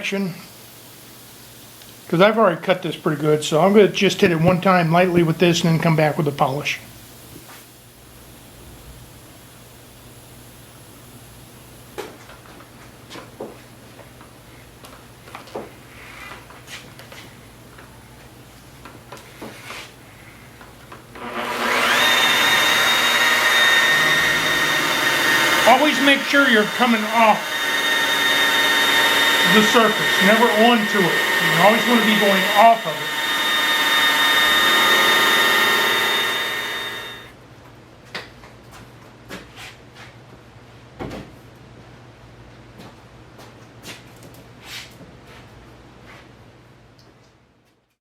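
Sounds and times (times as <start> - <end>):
electric polisher motor whine: 21.2 - 37.3.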